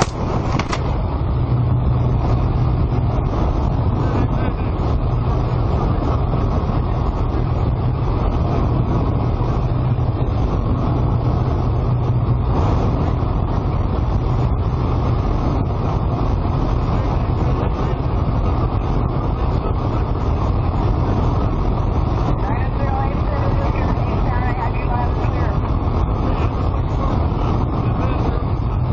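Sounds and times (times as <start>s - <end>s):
rushing air: 0.0s - 1.5s
light aircraft engine drone: 0.0s - 28.9s.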